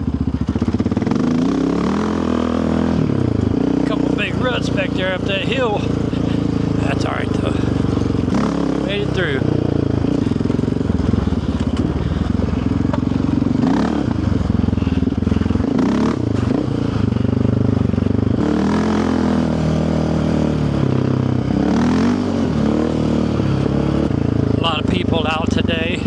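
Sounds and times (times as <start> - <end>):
quad bike engine revving: 0.0 - 26.0
clatter: 9.5 - 19.0.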